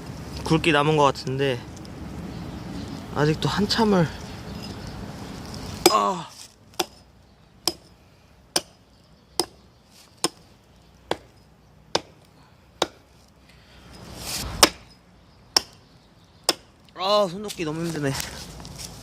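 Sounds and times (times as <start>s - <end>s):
hatchet chopping log: 5.8s - 7.0s, 7.6s - 7.9s, 8.5s - 8.8s, 9.4s - 9.6s, 10.2s - 10.4s, 11.1s - 13.1s, 14.5s - 15.8s, 16.5s - 16.7s.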